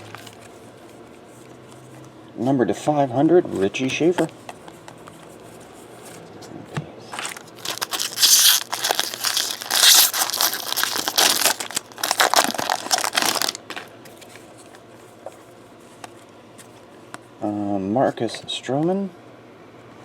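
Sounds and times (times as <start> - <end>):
plastic wrapping crinkling: 7.1 - 14.8.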